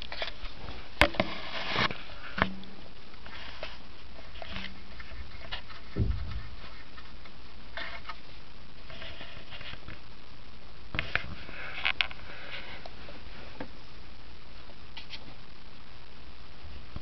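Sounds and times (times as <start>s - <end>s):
cats scuffling rustling and scratching: 0.0s - 10.0s.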